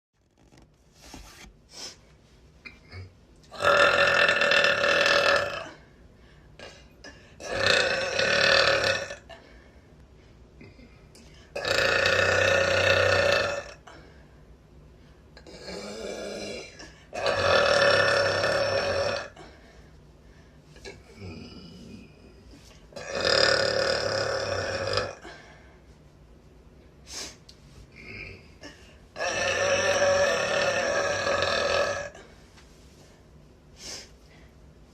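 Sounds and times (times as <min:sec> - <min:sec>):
woman burping: 0:02.7 - 0:05.8, 0:23.0 - 0:25.3, 0:28.0 - 0:32.3.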